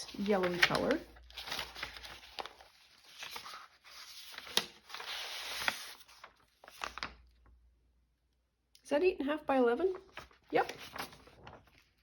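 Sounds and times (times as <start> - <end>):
paper rustling and sliding: 0.0 - 7.3, 9.9 - 12.0.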